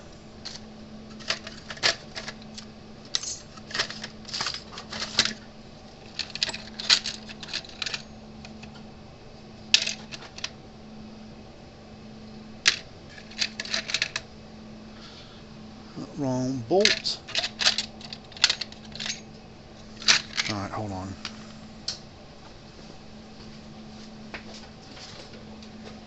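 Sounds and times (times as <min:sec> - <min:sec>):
metal hardware clinking and rattling: 0:00.4 - 0:05.4, 0:06.0 - 0:08.1, 0:12.7 - 0:14.2, 0:16.8 - 0:19.3.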